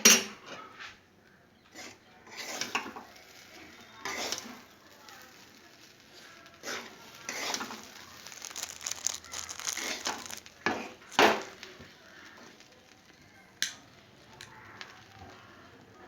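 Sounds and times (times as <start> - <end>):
spatula scraping coconut in pan: 1.7 - 4.7, 5.3 - 11.5.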